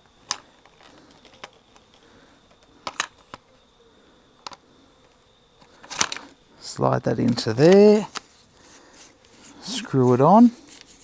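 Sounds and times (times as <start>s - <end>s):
faint high hum: 0.0s - 11.0s
plastic parts clicking and tapping: 0.2s - 3.5s, 4.4s - 6.3s, 7.2s - 8.3s.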